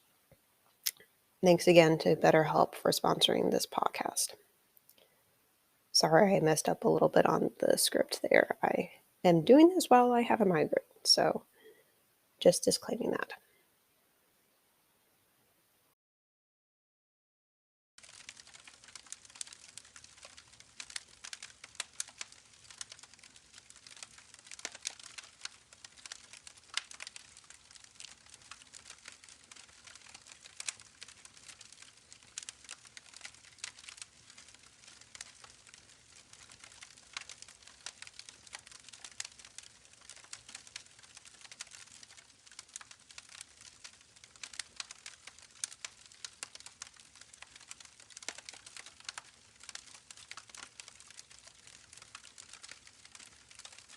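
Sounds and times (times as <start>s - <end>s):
faint steady hiss: 0.0s - 16.0s, 18.0s - 53.9s
campfire crackling: 18.0s - 53.9s.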